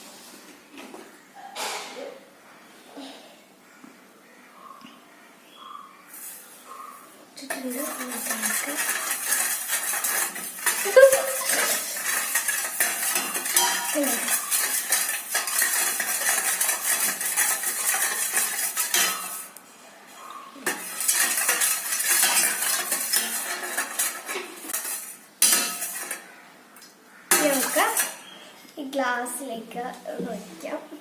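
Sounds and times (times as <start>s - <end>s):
spoon clinking in pot: 7.4s - 19.5s, 20.7s - 26.2s, 27.3s - 28.4s
spoon scraping pot sides: 7.4s - 19.6s, 20.6s - 26.3s, 27.3s - 28.4s.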